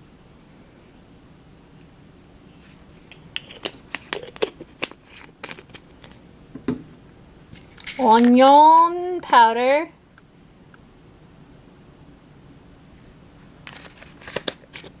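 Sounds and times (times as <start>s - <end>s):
plastic containers clicking: 3.4s - 6.1s.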